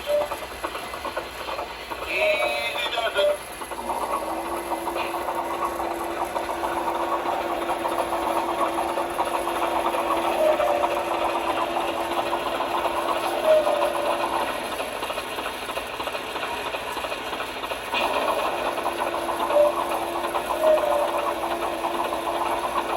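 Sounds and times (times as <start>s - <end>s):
small electric motor whining: 3.8s - 15.3s, 18.0s - 22.9s.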